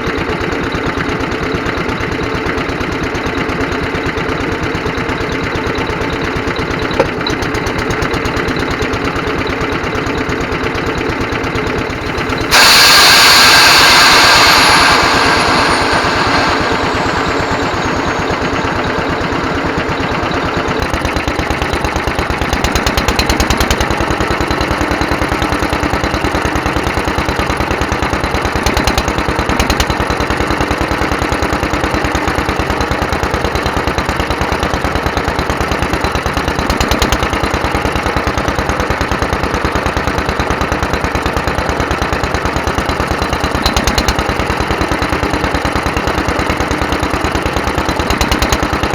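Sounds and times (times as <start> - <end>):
stationary engine running: 0.0 - 48.9
loud rushing noise: 12.4 - 21.2.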